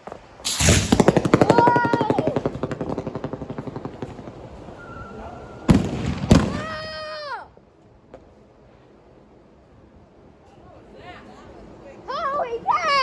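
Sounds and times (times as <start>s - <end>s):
firework bang: 0.4s - 7.1s
rapid crackling pops: 0.5s - 4.8s.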